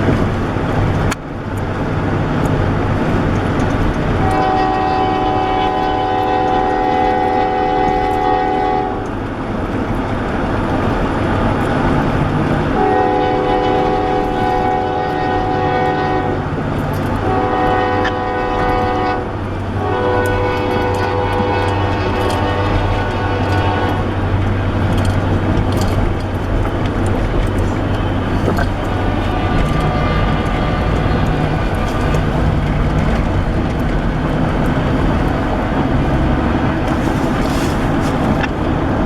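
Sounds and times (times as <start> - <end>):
low rumble of moving train: 0.0 - 39.0
road noise: 0.0 - 39.0
locomotive air horn blasts: 4.2 - 9.1, 12.7 - 38.3.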